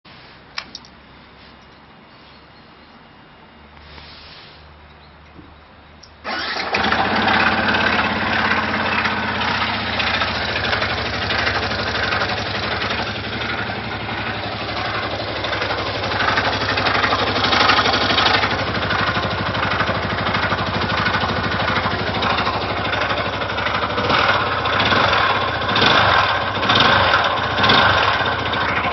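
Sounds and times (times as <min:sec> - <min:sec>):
weird engine noise: 0:00.1 - 0:28.9
motorcycle engine starting and idling: 0:06.0 - 0:28.9.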